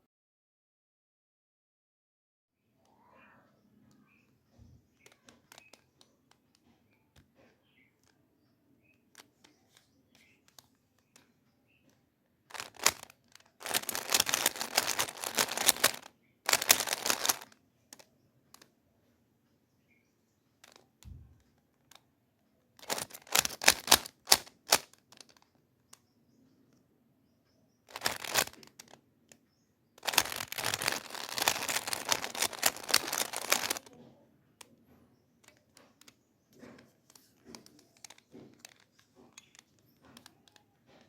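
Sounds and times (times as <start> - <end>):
plastic puzzle cube clicking: 5.0 - 6.6, 12.5 - 18.7, 22.8 - 26.0, 27.9 - 29.4, 30.0 - 34.0, 35.4 - 40.7.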